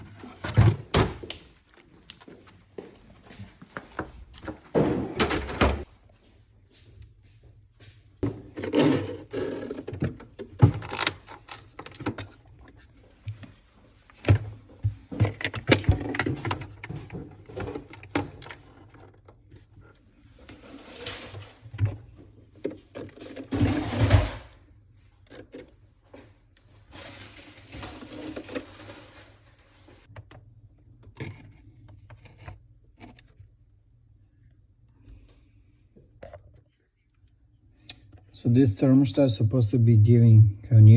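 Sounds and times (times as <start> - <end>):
scraping and rustling: 25.1 - 30.1.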